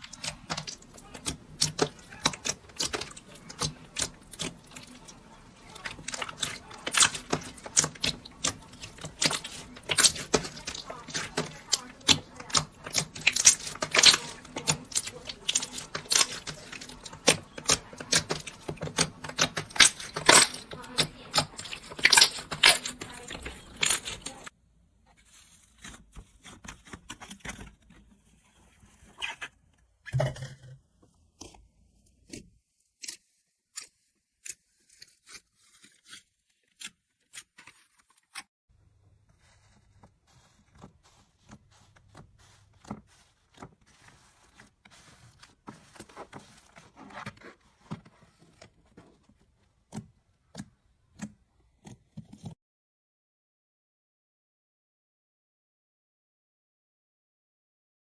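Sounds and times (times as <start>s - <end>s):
slime crackling and popping: 0.0s - 24.5s
slime squish: 0.0s - 24.5s, 25.2s - 30.6s, 39.2s - 51.4s.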